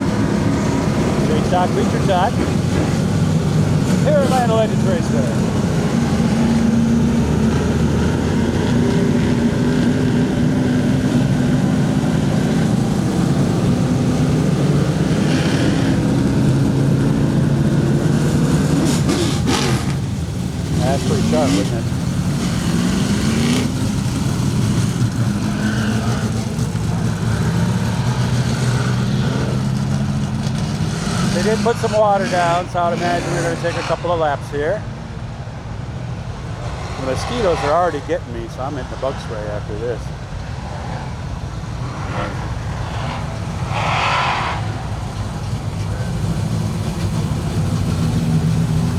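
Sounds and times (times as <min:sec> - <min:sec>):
race car engines idling: 0:00.0 - 0:48.9.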